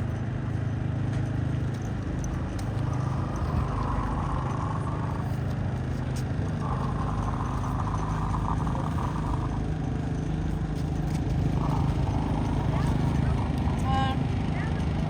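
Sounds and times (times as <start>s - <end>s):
motor humming: 2.1s - 10.1s, 10.9s - 15.0s
high steady whine: 2.1s - 14.5s.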